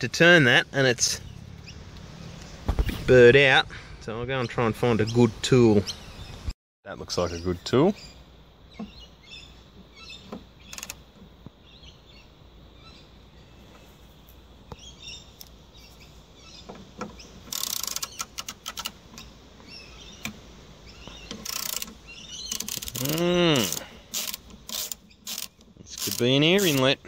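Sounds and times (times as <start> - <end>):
birds chirping: 0.0 - 27.0
hand tools clicking and rattling: 17.5 - 19.2, 21.3 - 26.9.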